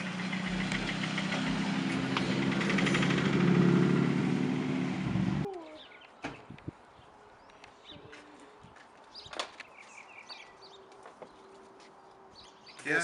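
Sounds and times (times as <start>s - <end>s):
engine running: 0.0s - 5.5s.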